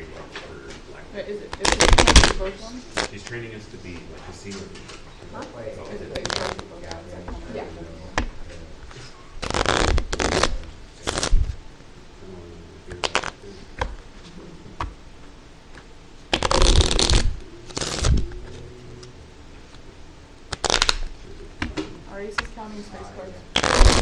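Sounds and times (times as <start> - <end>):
playing cards being shuffled: 1.5 - 3.2, 6.1 - 6.7, 9.4 - 11.6, 12.9 - 14.0, 15.8 - 18.6, 20.5 - 21.8, 23.5 - 24.0.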